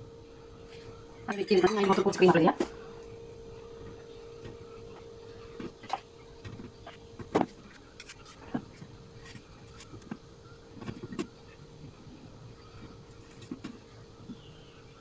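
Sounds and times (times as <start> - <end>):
faint hum: 0.0 - 15.0.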